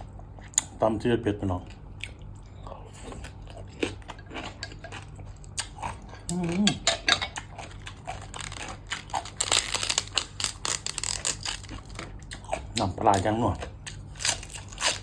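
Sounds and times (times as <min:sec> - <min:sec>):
chewing and crunching: 0:01.4 - 0:15.0
utensils clinking against plate: 0:06.3 - 0:07.7.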